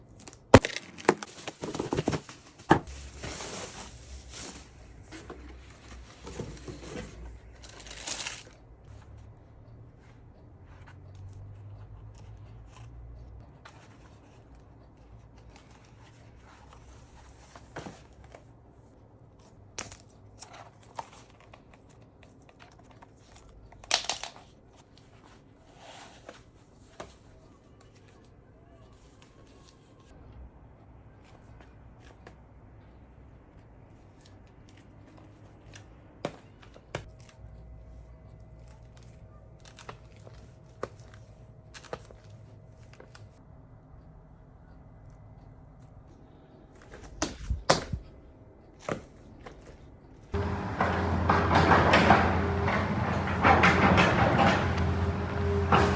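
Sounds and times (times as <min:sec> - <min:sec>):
paper and cardboard rustling: 0:00.2 - 0:09.2.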